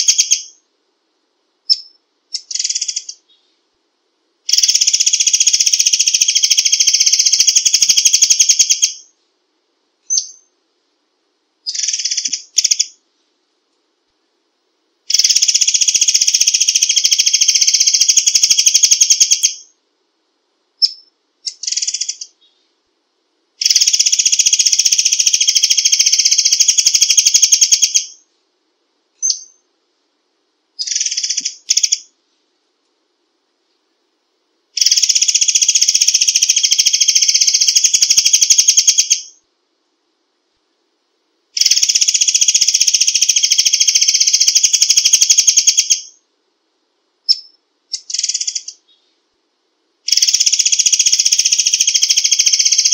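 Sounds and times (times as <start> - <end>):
songbird trilling: 0.0 - 0.6, 1.7 - 3.4, 4.5 - 9.1, 10.1 - 10.5, 11.7 - 13.0, 15.1 - 19.7, 20.8 - 22.6, 23.6 - 28.2, 29.2 - 29.6, 30.8 - 32.1, 34.8 - 39.4, 41.6 - 46.2, 47.3 - 49.0, 50.1 - 52.9.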